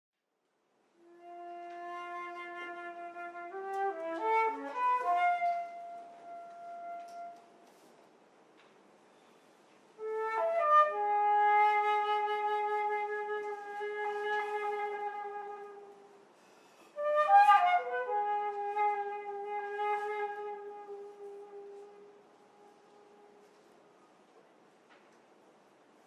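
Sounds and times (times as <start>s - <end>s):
solo flute playing: 1.0s - 7.9s, 10.0s - 23.8s.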